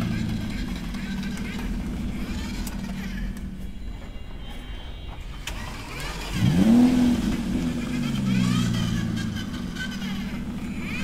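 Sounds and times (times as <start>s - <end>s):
toy vehicle electronic engine sound: 0.0s - 11.0s.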